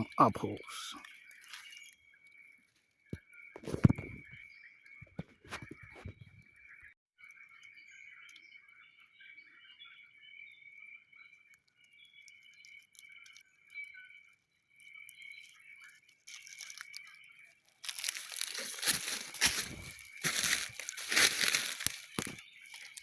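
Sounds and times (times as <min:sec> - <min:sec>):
close crackling and crunching: 0:00.2 - 0:02.0, 0:03.6 - 0:04.4, 0:11.6 - 0:23.0
insects chorus: 0:17.8 - 0:23.0.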